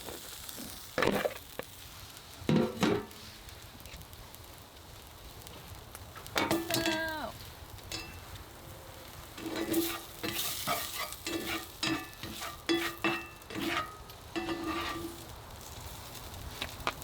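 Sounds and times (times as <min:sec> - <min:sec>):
sausage frying in a pan: 0:00.0 - 0:17.0
utensil scraping a ringing pan: 0:07.9 - 0:08.3, 0:09.4 - 0:15.3.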